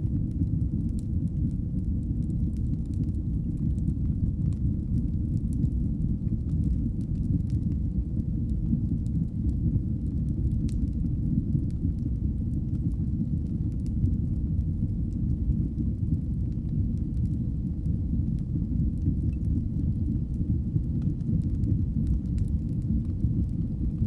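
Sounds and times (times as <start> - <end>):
faint crackles of fire: 0.0 - 24.0
fire burning in fireplace: 0.0 - 24.0.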